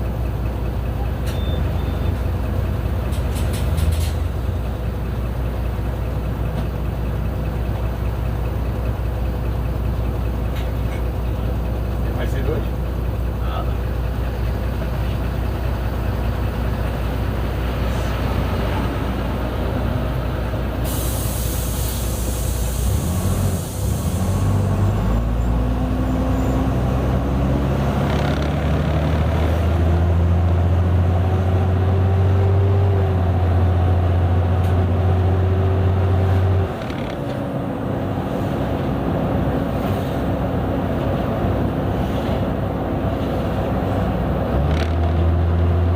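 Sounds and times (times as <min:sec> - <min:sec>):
bus diesel engine running: 0:00.0 - 0:45.9
air brake hiss: 0:20.8 - 0:24.5.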